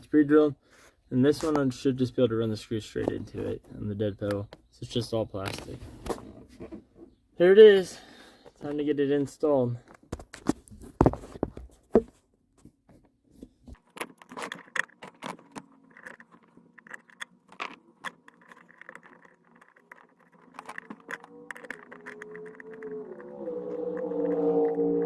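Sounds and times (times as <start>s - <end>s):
metallic clicks and rattling: 13.8s - 25.0s.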